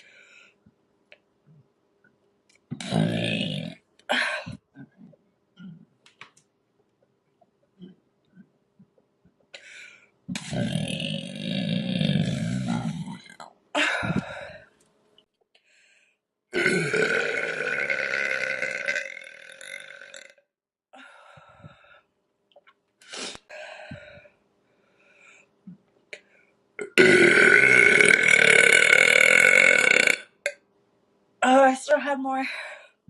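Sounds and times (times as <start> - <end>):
woman burping: 2.8 - 5.0, 16.5 - 20.4, 26.8 - 30.6.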